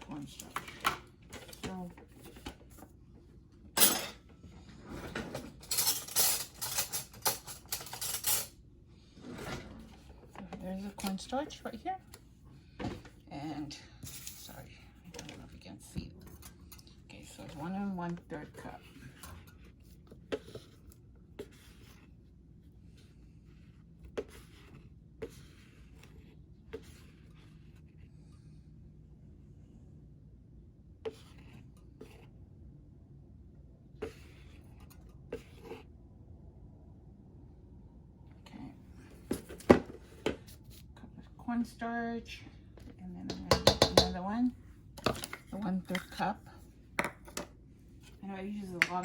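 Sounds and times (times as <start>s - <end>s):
low steady hum: 0.0s - 49.0s
dishes and utensils clattering: 3.8s - 4.3s, 4.9s - 8.6s
measuring cup scraping powder: 17.2s - 28.1s, 34.0s - 35.9s.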